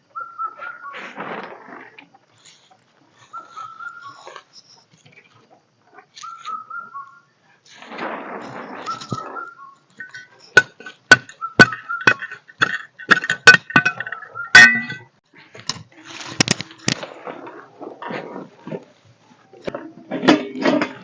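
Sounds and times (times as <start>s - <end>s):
sharp ringing clinks: 10.0s - 15.1s.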